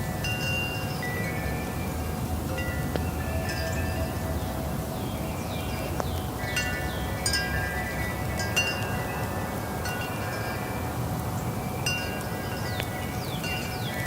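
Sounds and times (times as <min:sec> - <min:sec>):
low rumble of wind: 0:00.0 - 0:14.0
wind chimes ringing: 0:00.0 - 0:14.0.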